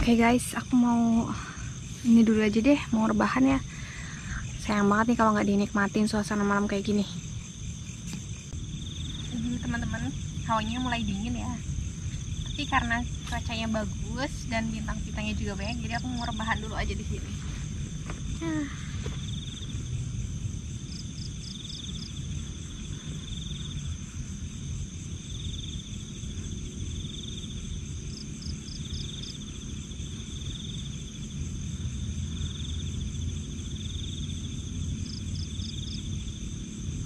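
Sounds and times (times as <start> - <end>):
insects trilling: 0.0 - 37.0
low rumble: 0.0 - 37.0
quick insect chirps: 14.8 - 37.0.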